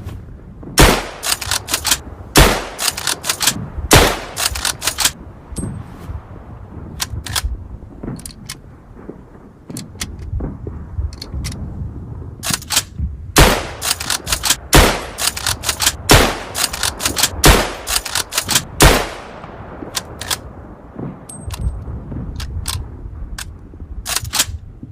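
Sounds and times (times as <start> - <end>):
rifle shots: 0.8 - 5.2, 12.4 - 20.4
light cracks and clicks: 4.3 - 5.7, 9.7 - 10.4, 15.2 - 18.8, 21.2 - 24.6.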